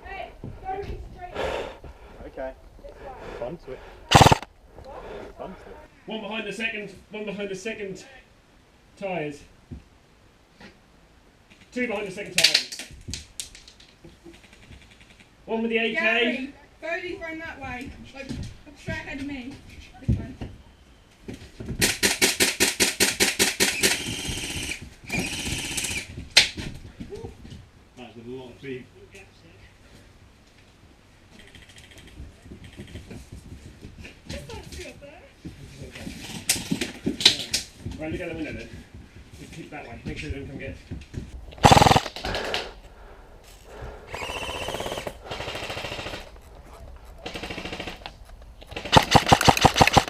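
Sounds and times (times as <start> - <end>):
airsoft gun firing: 4.1 - 4.5, 21.8 - 26.0, 41.6 - 42.8, 44.1 - 46.4, 48.7 - 50.0.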